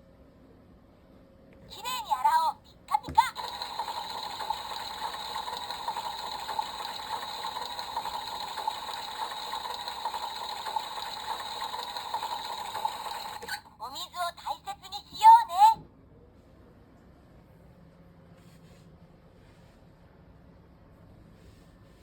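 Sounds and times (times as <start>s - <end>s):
toy mechanism whirring and clicking: 2.8s - 13.8s.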